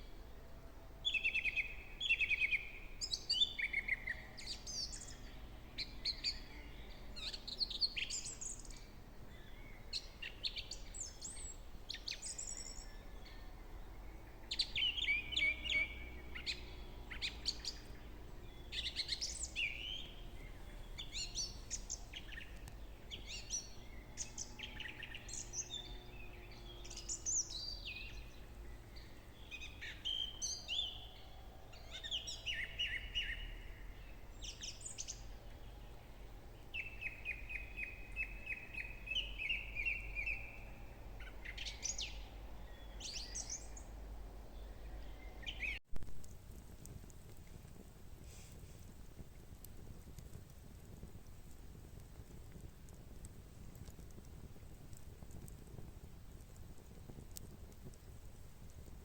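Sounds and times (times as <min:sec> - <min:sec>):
songbirds chirping and trilling: 0:00.0 - 0:45.8.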